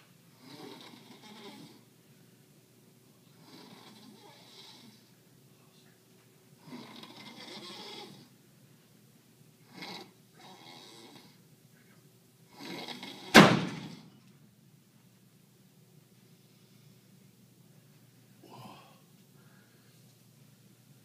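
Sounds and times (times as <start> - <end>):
person snoring: 0.3 - 1.8, 3.4 - 5.0, 6.6 - 8.3, 9.6 - 11.4, 12.5 - 13.3
loud sharp burst: 13.3 - 14.0.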